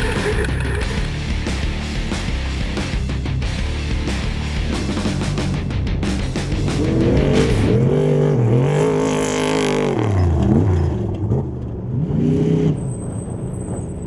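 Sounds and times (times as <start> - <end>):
engine revving hard: 0.0 - 10.9.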